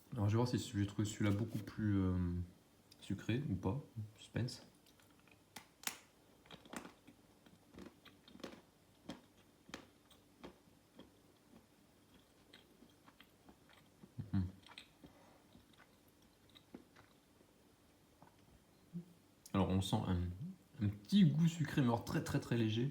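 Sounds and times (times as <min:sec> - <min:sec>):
chewing chocolate: 0:06.3 - 0:17.3.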